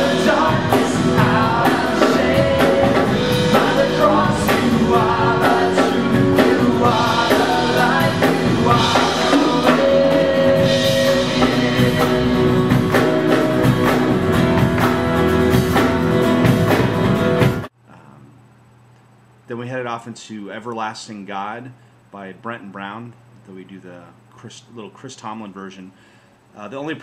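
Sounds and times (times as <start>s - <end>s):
voices singing: 0.0s - 14.0s
drum kit: 0.0s - 18.0s
guitar: 0.0s - 18.3s.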